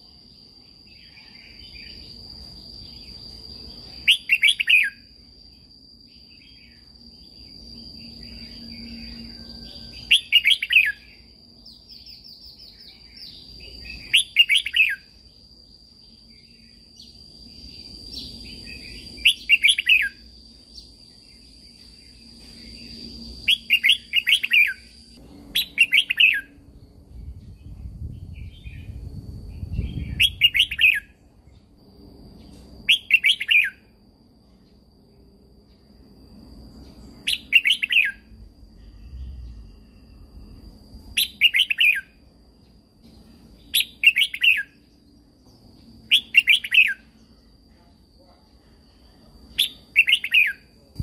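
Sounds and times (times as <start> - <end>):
thin steady high tone: 0.0 - 27.4, 30.6 - 51.0
bulbul singing: 0.9 - 5.5, 6.1 - 28.9, 36.9 - 47.5, 48.8 - 51.0.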